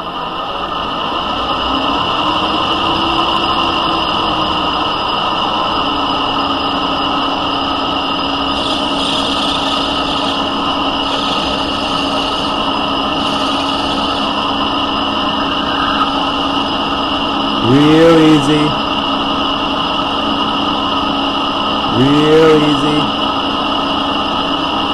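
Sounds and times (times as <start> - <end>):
lathe motor hum: 0.2 - 24.9
hiss of cutting tool: 8.6 - 10.4.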